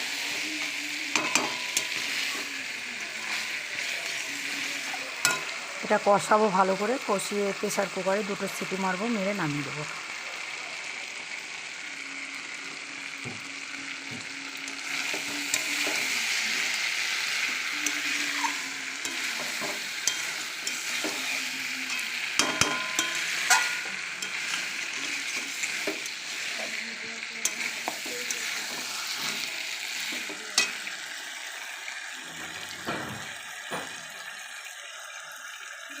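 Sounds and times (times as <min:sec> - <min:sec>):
meat and potatoes sizzling in oil: 0:00.0 - 0:36.0
spatula clinking against pan: 0:01.1 - 0:02.2, 0:05.2 - 0:05.5, 0:17.8 - 0:26.2.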